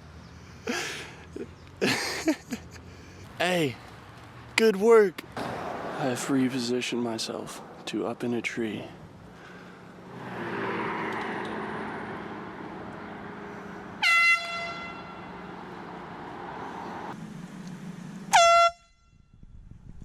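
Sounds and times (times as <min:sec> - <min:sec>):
air horn blasts: 0:13.8 - 0:15.5, 0:18.3 - 0:19.3.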